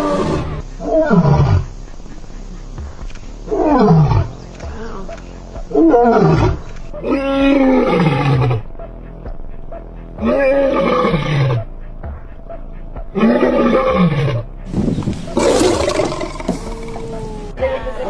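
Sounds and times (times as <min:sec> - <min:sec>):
big cat roaring: 0:05.8 - 0:08.6, 0:10.2 - 0:11.6, 0:13.2 - 0:17.5.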